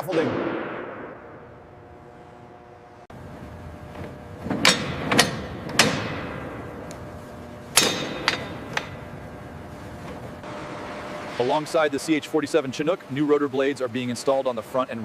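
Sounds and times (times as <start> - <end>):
steady background noise: 0.0 - 15.0
sharp ringing metal strikes: 7.8 - 9.0.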